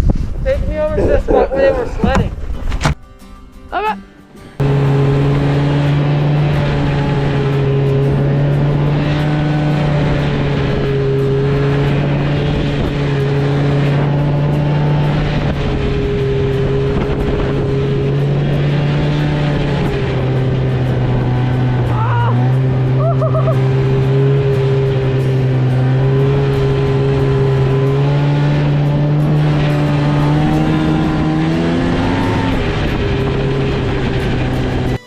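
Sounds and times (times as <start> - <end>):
snowmobile engine running: 4.6 - 35.0.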